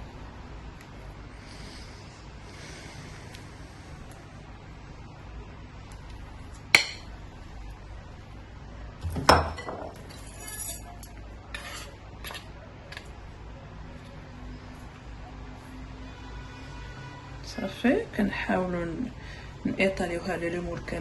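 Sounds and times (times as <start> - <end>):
utensils and dishes clinking: 9.1 - 13.0.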